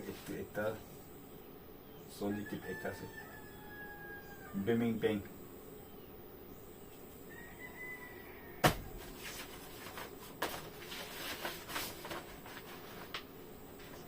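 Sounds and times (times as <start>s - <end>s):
rustling: 8.6s - 14.0s.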